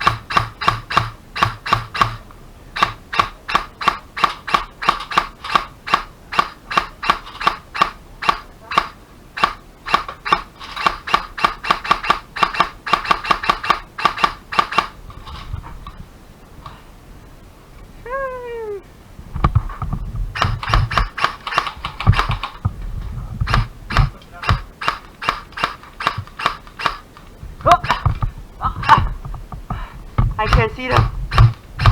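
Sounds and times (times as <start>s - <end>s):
airsoft gun rapid shots: 0.0s - 15.0s, 20.4s - 22.6s, 23.4s - 28.2s, 30.4s - 31.9s
microphone handling rumble: 15.0s - 21.2s, 21.8s - 24.7s, 27.2s - 31.9s.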